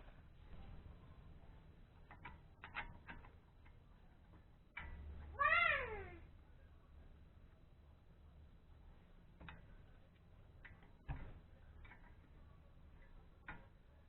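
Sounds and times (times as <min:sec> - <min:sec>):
cat meowing: 0:05.3 - 0:06.2.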